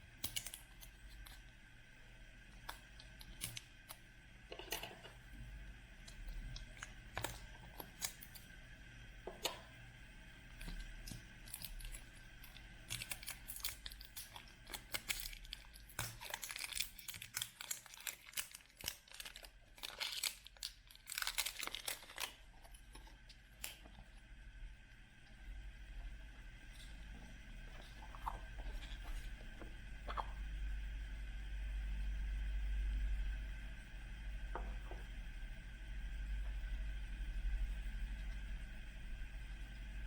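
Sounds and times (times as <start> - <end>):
packaging crinkling and tearing: 10.6 - 24.0.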